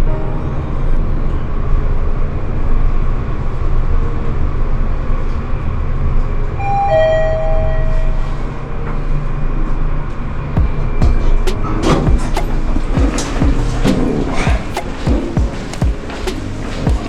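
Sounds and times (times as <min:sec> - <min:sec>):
elevator low rumble: 0:00.0 - 0:17.0.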